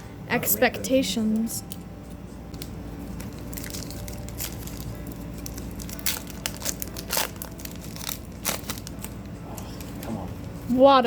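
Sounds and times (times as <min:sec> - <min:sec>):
foil wrapper crinkling and tearing: 0:02.5 - 0:10.2.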